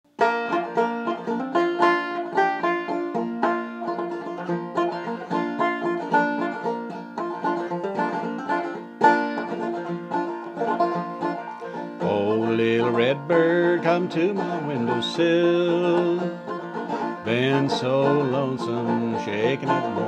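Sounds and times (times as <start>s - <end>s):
plucked string instrument playing: 0.1s - 20.0s.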